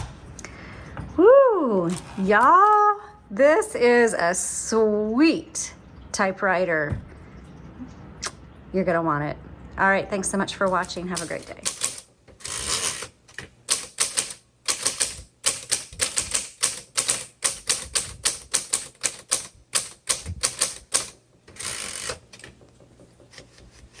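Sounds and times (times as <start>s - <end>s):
typewriter keys clacking: 10.7s - 24.0s.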